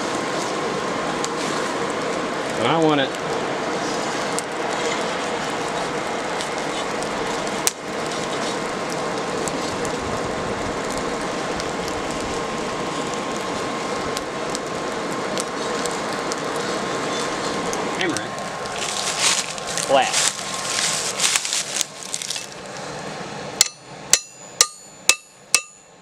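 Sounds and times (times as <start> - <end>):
motor hum: 0.0 - 25.7
fire crackling: 0.0 - 26.0
sharp metal clank: 23.6 - 26.0.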